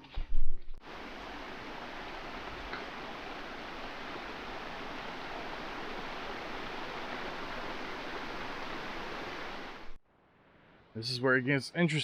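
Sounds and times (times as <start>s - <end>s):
water rushing over rocks: 0.8s - 10.0s.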